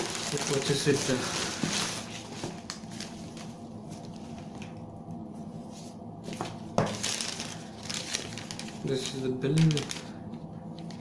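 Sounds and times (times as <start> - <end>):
box and papers rustling: 0.0 - 4.7, 6.3 - 10.1.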